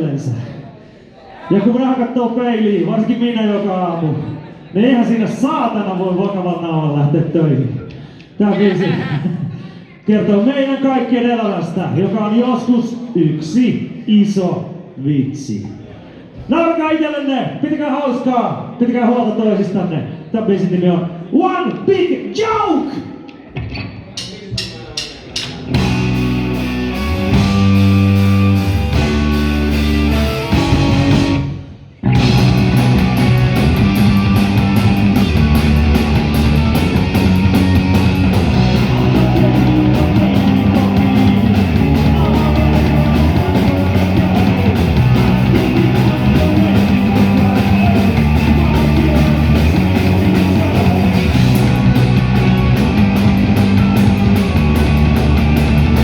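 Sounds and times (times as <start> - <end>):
rock band playing hard: 23.6 - 56.0
guitar and bass riff: 25.6 - 56.0.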